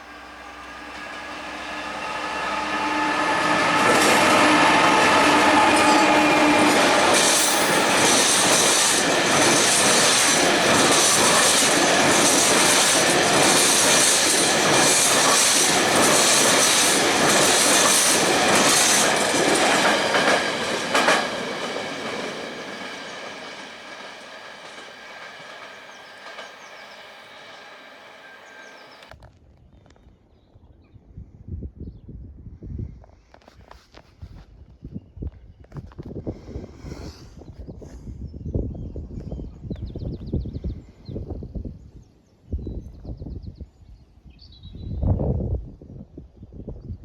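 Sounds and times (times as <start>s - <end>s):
diesel train engine: 0.0s - 29.1s
train wheel clatter: 0.0s - 29.1s
wheel squeal: 24.4s - 29.1s.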